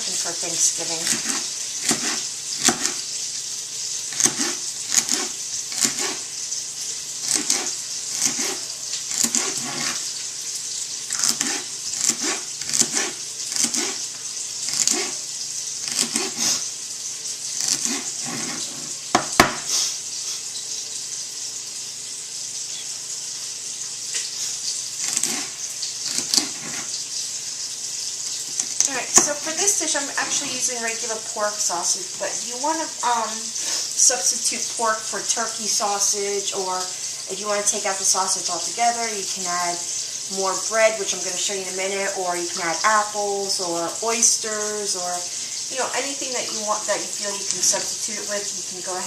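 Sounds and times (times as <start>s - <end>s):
spoon scraping and knocking pot: 0.0s - 3.0s, 4.1s - 6.3s, 7.2s - 10.1s, 11.1s - 15.2s, 15.8s - 16.7s, 17.6s - 19.7s, 25.0s - 27.0s
sausage sizzling in a pot: 0.0s - 49.0s.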